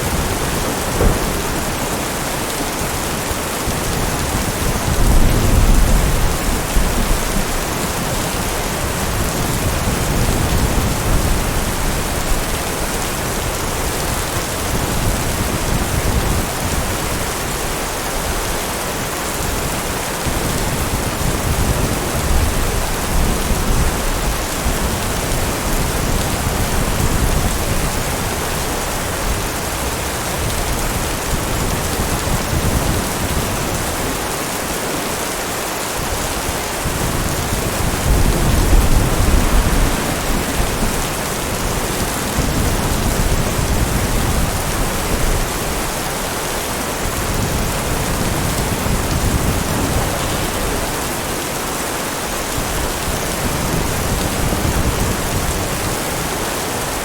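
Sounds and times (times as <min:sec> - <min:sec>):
thunder rumbling: 0:00.0 - 0:18.3, 0:36.0 - 0:51.6
heavy rain falling: 0:00.0 - 0:57.0.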